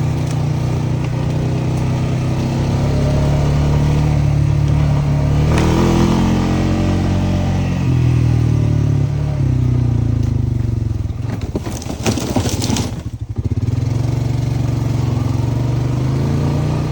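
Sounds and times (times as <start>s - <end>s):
atv engine running: 0.0s - 16.9s.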